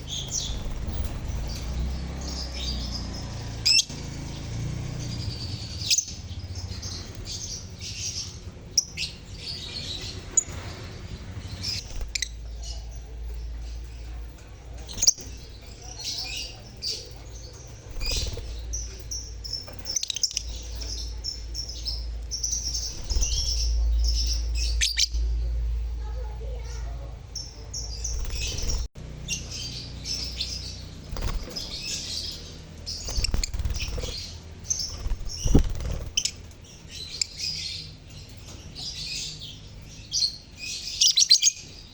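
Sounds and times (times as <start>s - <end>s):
steady low rumble: 0.0s - 38.2s
lovebirds chirping: 0.0s - 41.9s.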